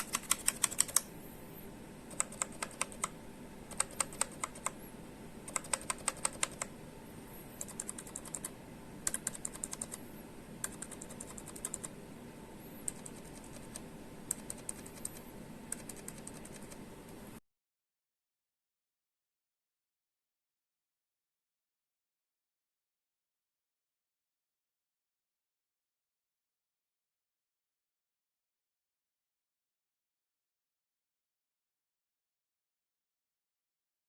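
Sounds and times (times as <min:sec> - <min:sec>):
mechanical keyboard typing: 0:00.0 - 0:01.1, 0:02.1 - 0:04.8, 0:05.4 - 0:06.7, 0:07.6 - 0:10.0, 0:10.6 - 0:12.0, 0:12.8 - 0:16.8.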